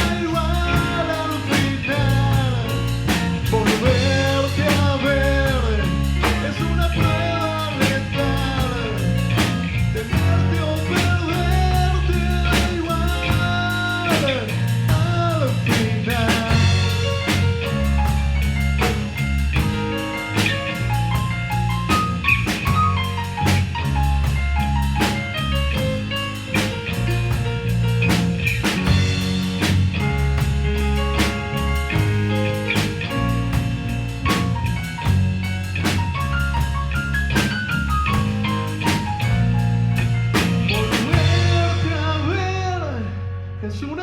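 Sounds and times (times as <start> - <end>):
drum kit beat: 0.0 - 42.2
melodic lead line: 0.0 - 43.3
bass line: 0.0 - 44.0.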